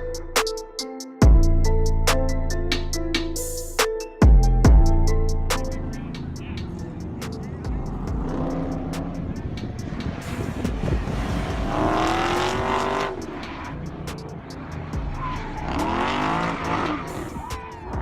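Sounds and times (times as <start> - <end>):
hip-hop music with beat: 0.0 - 18.0
car passing: 5.9 - 18.0.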